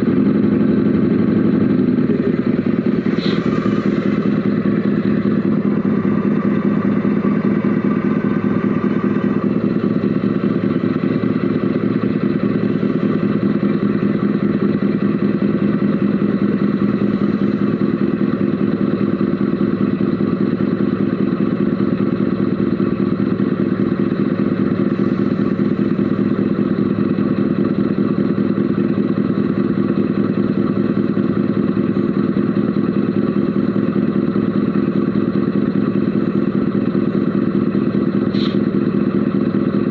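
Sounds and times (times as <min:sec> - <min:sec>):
model truck motor droning: 0:00.0 - 0:39.9.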